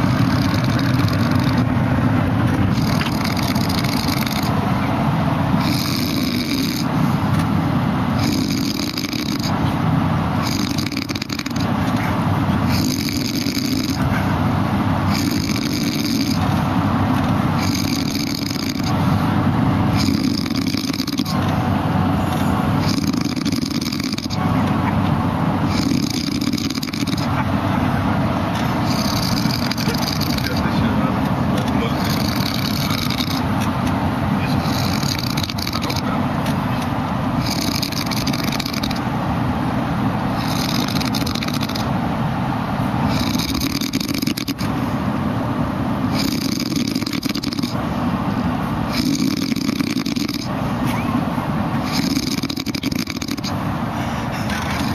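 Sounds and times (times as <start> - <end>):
person snoring: 0.0 - 1.7, 2.7 - 4.5, 5.6 - 6.9, 8.2 - 9.6, 10.4 - 11.7, 12.7 - 14.1, 15.1 - 16.5, 17.6 - 19.0, 19.9 - 21.4, 22.8 - 24.5, 25.7 - 27.4, 28.8 - 30.8, 31.8 - 33.5, 34.5 - 36.2, 37.4 - 39.0, 40.4 - 41.9, 43.1 - 44.7, 46.1 - 47.8, 48.9 - 50.5, 51.8 - 53.5, 54.4 - 54.9
steady low rumble: 0.0 - 8.7, 11.4 - 23.7, 24.3 - 43.8.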